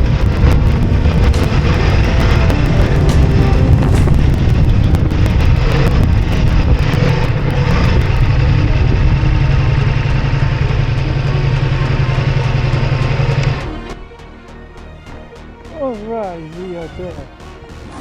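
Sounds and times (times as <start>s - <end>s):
motorcycle engine rumble: 0.0s - 13.1s
road and wind noise: 0.0s - 13.7s.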